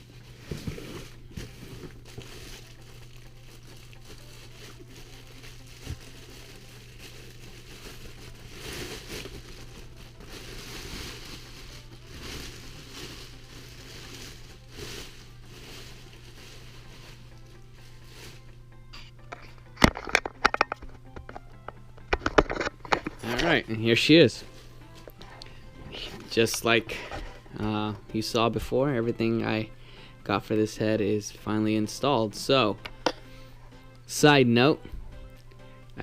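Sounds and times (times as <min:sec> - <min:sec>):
plastic bag crinkling: 0:00.0 - 0:18.5, 0:22.1 - 0:29.6.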